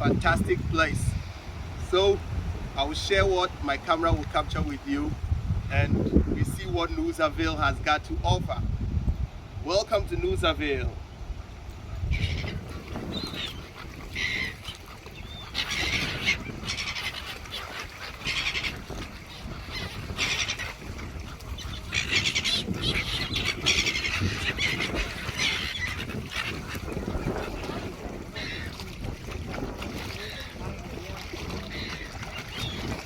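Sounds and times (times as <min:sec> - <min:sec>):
birds raspy calls: 0:11.9 - 0:33.0.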